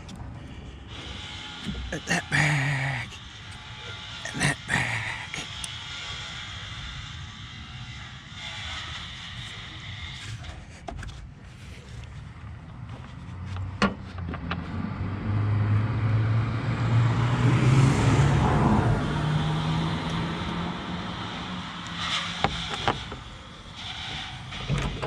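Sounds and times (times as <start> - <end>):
vehicle engine passing: 14.4 - 22.4.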